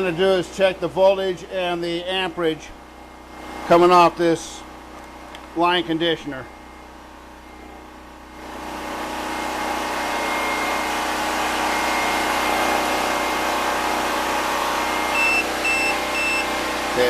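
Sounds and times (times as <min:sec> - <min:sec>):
generator engine running: 0:00.0 - 0:17.0
short high beeps: 0:15.1 - 0:16.5.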